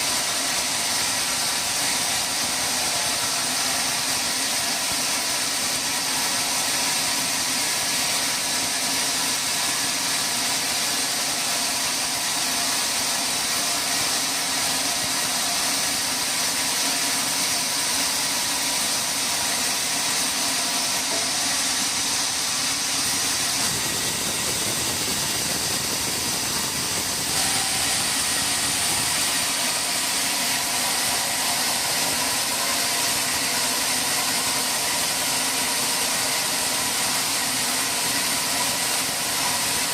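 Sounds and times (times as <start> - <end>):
sawmill machinery hissing: 0.0 - 39.9
low rumble: 23.4 - 27.4.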